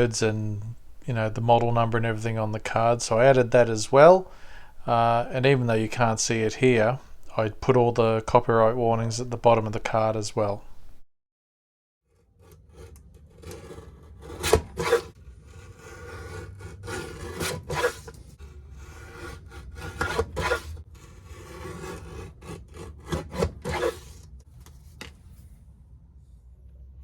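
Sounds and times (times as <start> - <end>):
low steady hum: 0.0 - 11.0
hand rubbing and scraping: 12.8 - 25.7.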